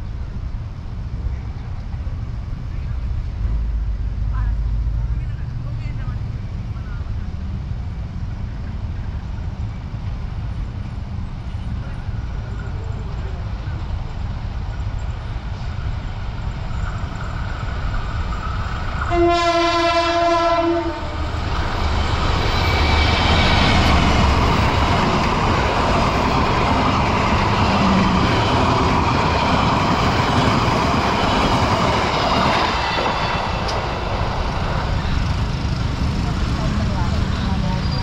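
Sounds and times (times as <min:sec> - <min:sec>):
train wheels on rails: 0:00.0 - 0:38.0
train horn blast: 0:19.0 - 0:21.4.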